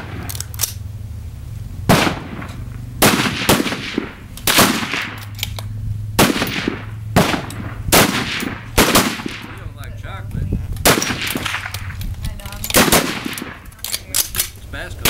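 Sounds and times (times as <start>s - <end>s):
steady low hum: 0.0s - 15.0s
rifle shots: 1.9s - 5.6s, 6.2s - 9.7s, 10.8s - 12.0s, 12.6s - 14.6s.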